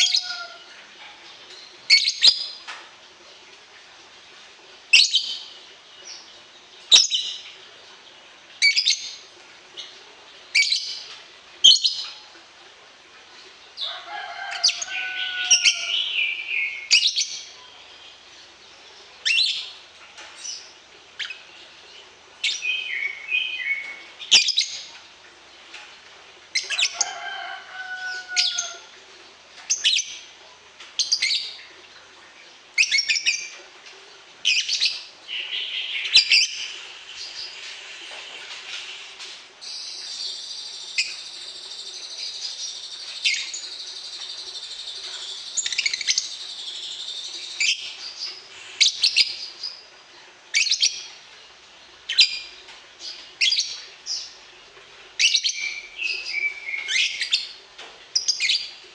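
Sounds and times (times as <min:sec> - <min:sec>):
songbird chirping: 0:13.2 - 0:58.9.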